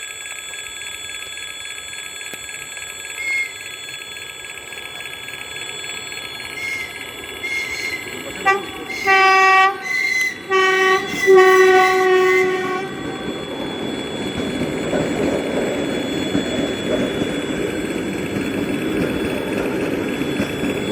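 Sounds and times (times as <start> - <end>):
electric train horn blasts: 6.4 - 15.0.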